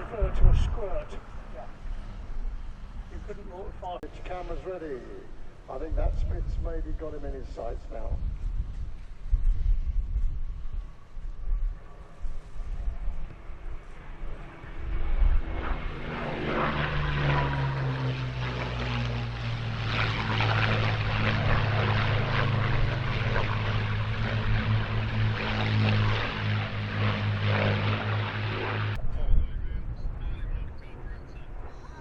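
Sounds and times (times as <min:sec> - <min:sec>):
propeller planes flying past: 0:00.0 - 0:32.0
piston engine drone: 0:14.2 - 0:29.0.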